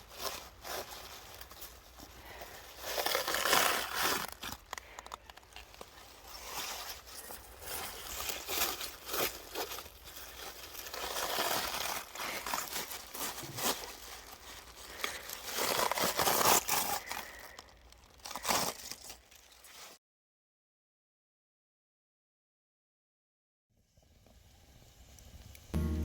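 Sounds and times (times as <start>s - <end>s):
crinkling and rustling handling noise: 0.0s - 20.0s.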